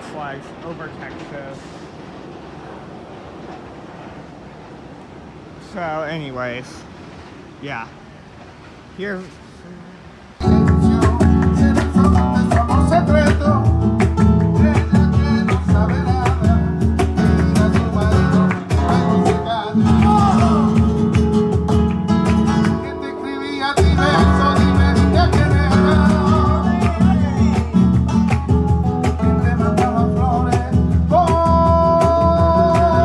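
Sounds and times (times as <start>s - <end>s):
fast-strummed acoustic guitar: 10.4s - 23.0s, 23.8s - 33.0s.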